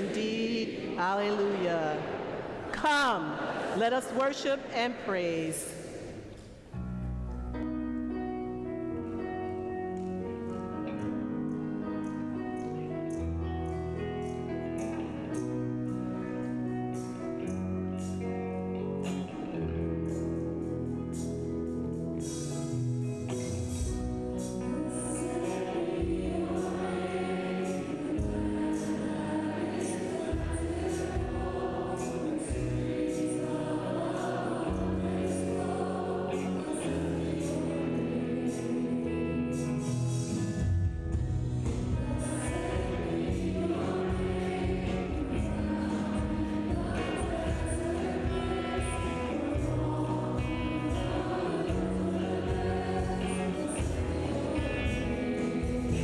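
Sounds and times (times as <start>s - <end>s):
voices singing together: 0.0s - 4.3s, 24.3s - 39.9s, 41.7s - 56.0s
band playing worship song: 0.0s - 56.0s.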